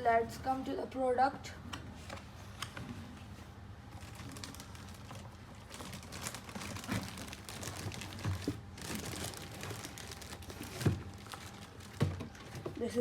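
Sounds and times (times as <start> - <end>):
packaging rustling: 3.9 - 12.7.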